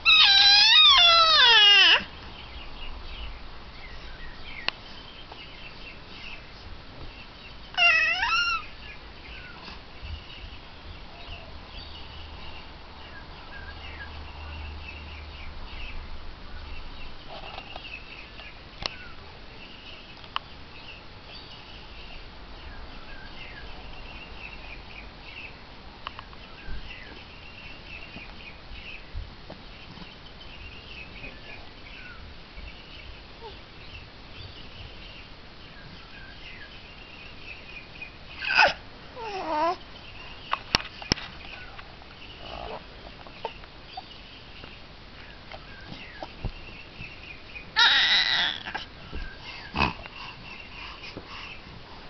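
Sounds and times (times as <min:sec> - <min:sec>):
baby crying: 0:00.0 - 0:02.1, 0:38.4 - 0:39.8, 0:47.8 - 0:48.9.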